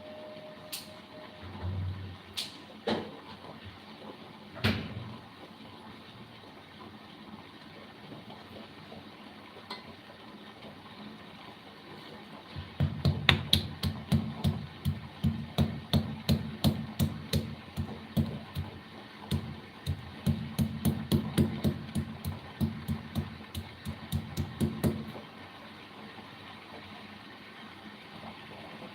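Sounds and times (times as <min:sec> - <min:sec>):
rhythmic knocking in food preparation: 0:12.5 - 0:25.2.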